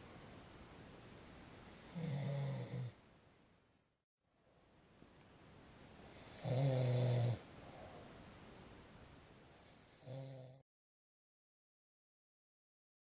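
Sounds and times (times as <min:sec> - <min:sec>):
man snoring: 0:01.7 - 0:03.0, 0:06.1 - 0:07.4, 0:09.6 - 0:10.6
faint breathing: 0:07.5 - 0:08.4, 0:09.5 - 0:10.2.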